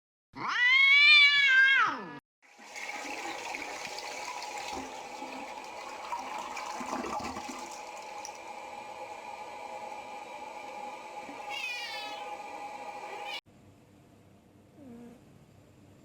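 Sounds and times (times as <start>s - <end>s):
cat meowing: 0.4s - 2.2s, 11.4s - 12.4s.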